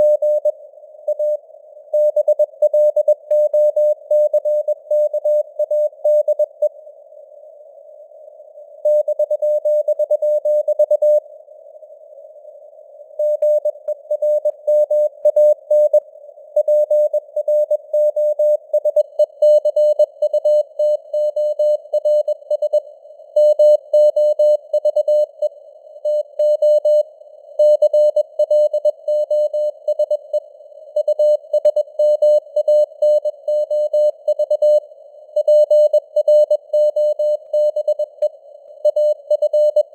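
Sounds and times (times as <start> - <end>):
morse code beeps: 35.4 - 38.3.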